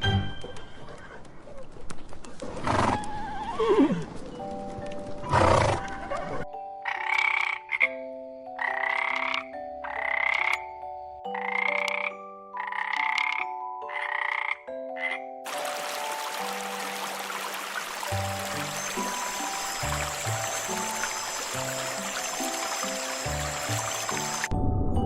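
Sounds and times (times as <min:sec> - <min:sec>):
frog croaking: 0:06.8 - 0:10.7, 0:11.3 - 0:15.3, 0:18.1 - 0:24.5.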